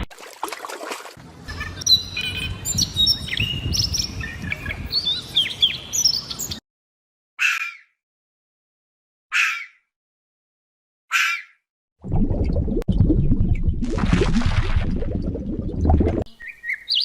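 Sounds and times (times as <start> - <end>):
small birds chirping: 1.5 - 6.6, 16.3 - 17.0.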